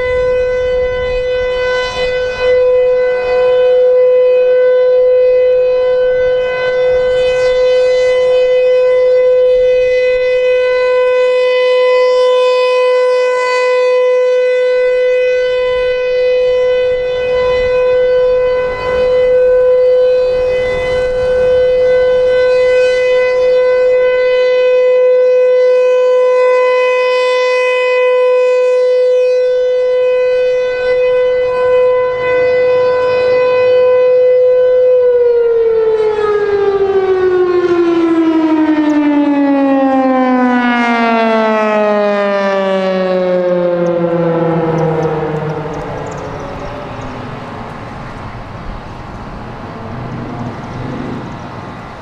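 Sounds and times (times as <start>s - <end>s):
civil defense siren steady tone: 0.0s - 52.0s.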